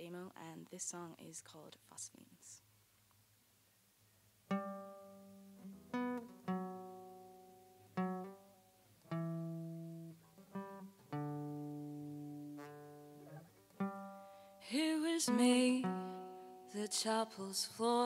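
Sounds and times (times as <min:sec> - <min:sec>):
slow guitar playing: 0:04.5 - 0:17.3.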